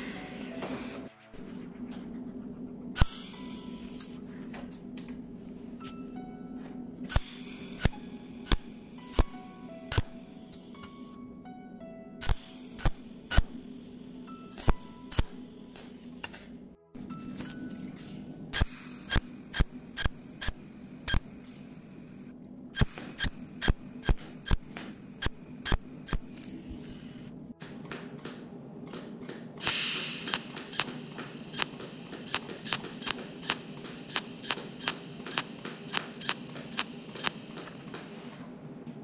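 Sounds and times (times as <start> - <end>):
steady low hum: 0.0 - 39.0
welding machine pulse clicks: 7.1 - 10.2, 12.2 - 13.6, 14.6 - 16.5, 18.6 - 21.4, 22.8 - 26.4, 27.8 - 38.1.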